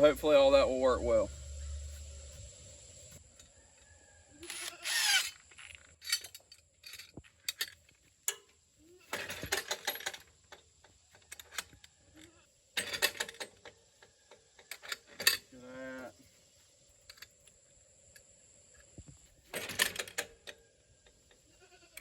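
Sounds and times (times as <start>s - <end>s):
metal hardware clicking and clinking: 4.4s - 15.6s, 19.5s - 21.4s.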